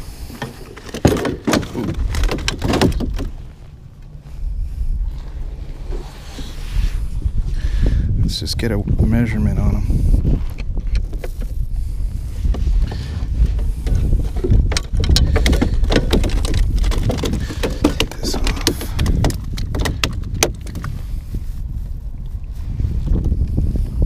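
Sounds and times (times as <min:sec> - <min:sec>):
wind on microphone: 0:00.0 - 0:24.0
knocks and clatter in canoe: 0:00.2 - 0:04.1, 0:10.5 - 0:22.0.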